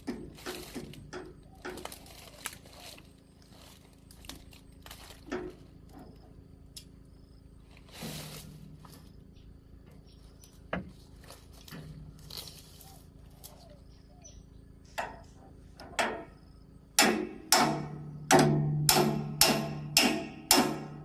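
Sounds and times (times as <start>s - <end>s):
loud sharp ringing strikes: 16.0s - 21.0s.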